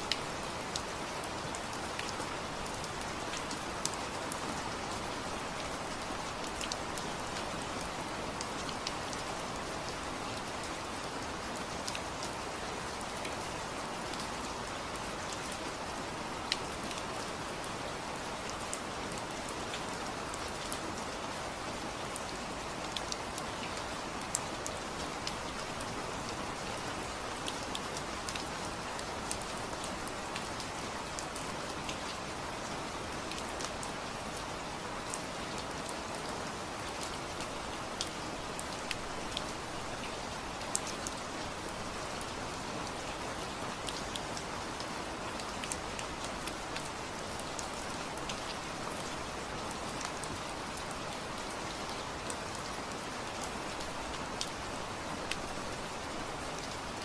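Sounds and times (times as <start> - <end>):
steady rain falling: 0.0 - 57.0
raindrops ticking on a surface: 0.1 - 57.0.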